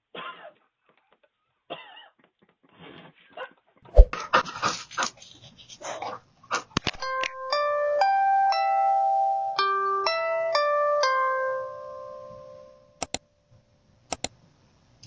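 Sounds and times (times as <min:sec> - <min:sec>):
bell-like plucked tune: 0:07.0 - 0:13.0
quick sharp clicks: 0:13.0 - 0:13.2, 0:14.1 - 0:14.4.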